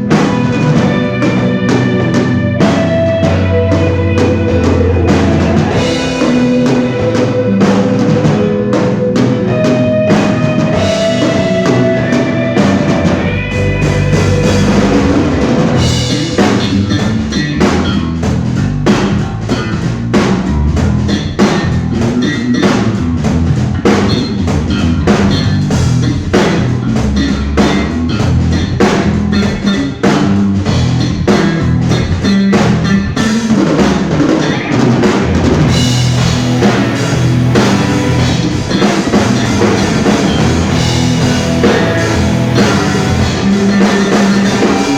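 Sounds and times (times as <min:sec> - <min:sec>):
band playing live: 0:00.0 - 0:44.9
drum kit rock beat: 0:00.0 - 0:44.9.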